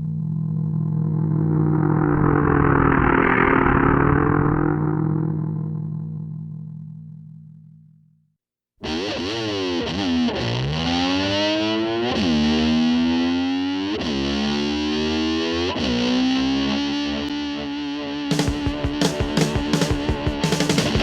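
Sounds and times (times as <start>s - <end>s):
distorted electric slide guitar: 8.8s - 21.0s.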